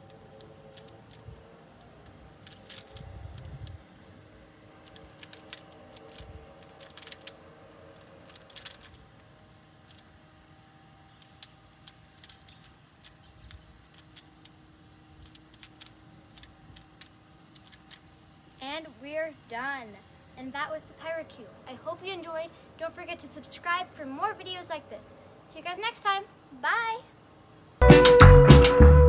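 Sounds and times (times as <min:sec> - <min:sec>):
plastic puzzle pieces clicking: 0:00.0 - 0:01.2, 0:02.0 - 0:03.8, 0:04.8 - 0:10.2, 0:11.2 - 0:14.6, 0:15.2 - 0:18.1.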